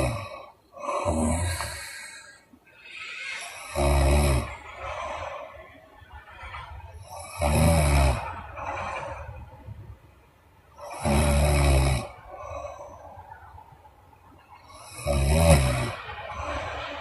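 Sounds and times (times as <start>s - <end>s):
woman snoring: 0.0s - 2.2s, 2.9s - 4.6s, 7.1s - 8.4s, 10.8s - 12.1s.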